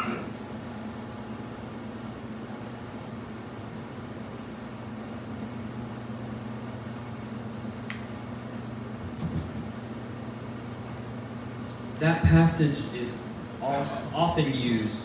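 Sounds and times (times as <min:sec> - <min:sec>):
sharp click: 0:07.8 - 0:08.1.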